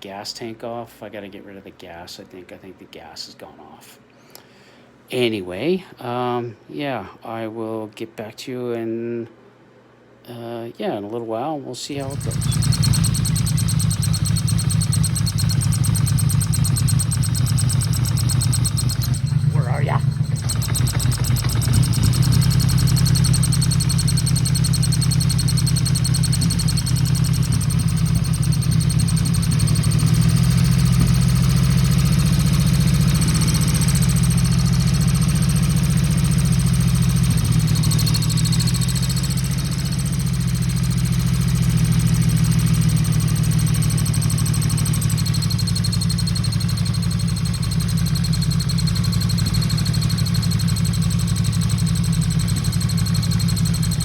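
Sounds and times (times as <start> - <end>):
motorcycle engine idling: 12.0 - 54.0.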